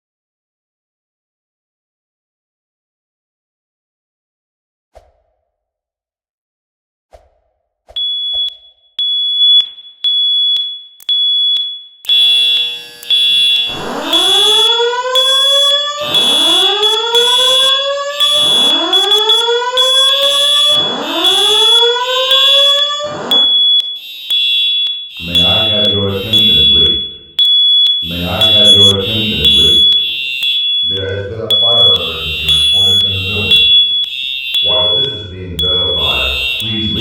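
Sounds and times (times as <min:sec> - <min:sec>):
high-pitched alarm beeps: 0:08.0 - 0:37.0
rising whoop alarm tone: 0:12.1 - 0:27.2, 0:28.0 - 0:37.0.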